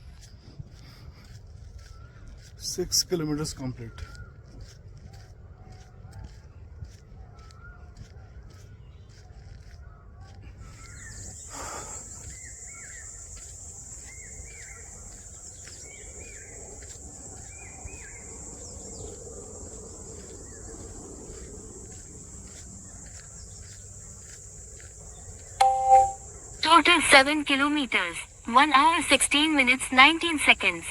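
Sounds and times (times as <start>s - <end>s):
faint footsteps walking: 0.0s - 26.6s
birds chirping: 10.6s - 30.9s
crickets or cicadas buzzing: 10.8s - 30.9s.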